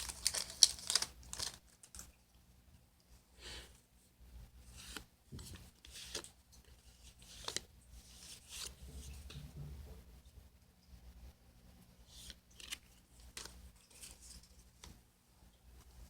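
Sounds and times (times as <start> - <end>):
foil wrappers and cards rustling: 0.0 - 2.1.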